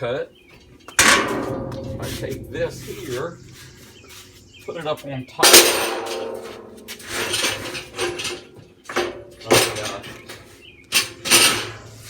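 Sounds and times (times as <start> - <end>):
steel plate clanking on metal: 1.0 - 4.2, 5.4 - 10.4, 11.0 - 12.0.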